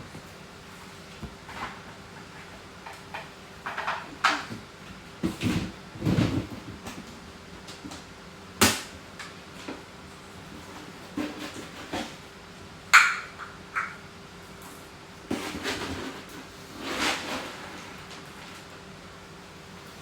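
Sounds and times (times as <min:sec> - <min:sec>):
knocks and clatters in kitchen: 0:01.2 - 0:09.9, 0:12.9 - 0:14.1.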